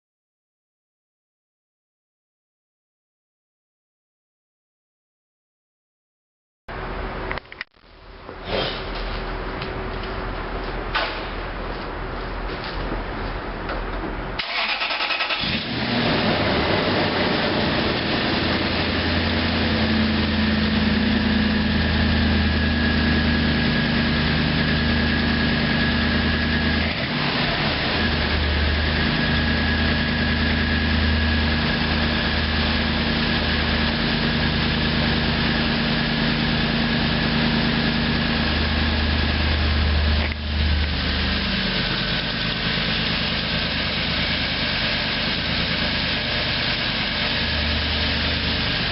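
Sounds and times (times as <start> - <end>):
engine starting and idling: 14.4 - 21.0.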